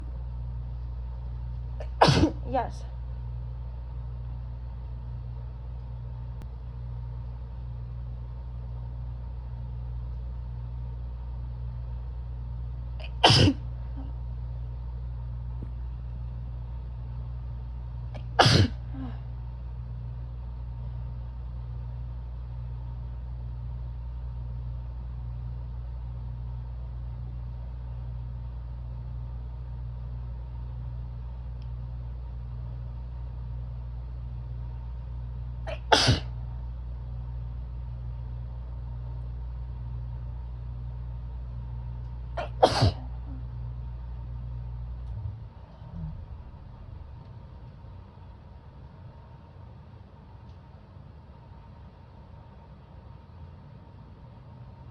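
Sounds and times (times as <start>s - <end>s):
steady low hum: 0.0s - 54.9s
woman sneezing: 1.8s - 2.5s, 13.0s - 13.6s, 18.4s - 19.2s, 35.7s - 36.3s, 42.4s - 43.1s.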